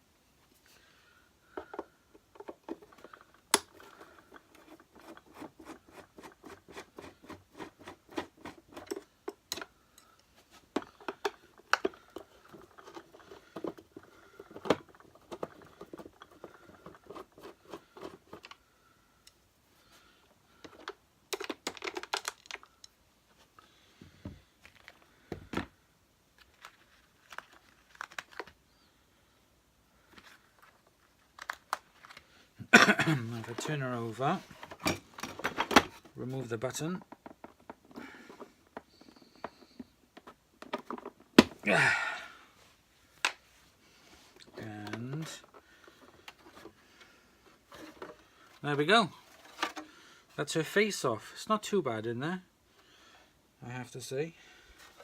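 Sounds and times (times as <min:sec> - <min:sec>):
plastic rattle: 0:01.5 - 0:18.7, 0:20.5 - 0:23.0, 0:26.4 - 0:28.6, 0:37.0 - 0:41.6.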